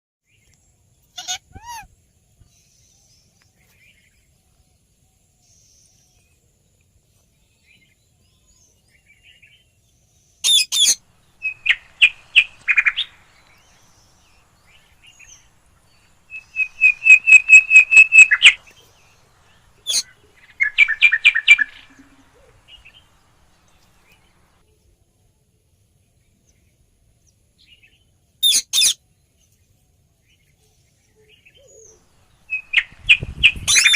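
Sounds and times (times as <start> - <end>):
parrots calling: 1.2 - 1.9, 10.4 - 24.5.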